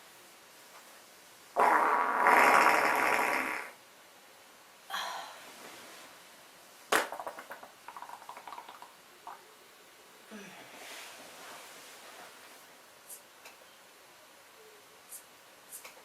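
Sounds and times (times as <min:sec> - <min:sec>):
sputtering fart: 0:01.6 - 0:03.8.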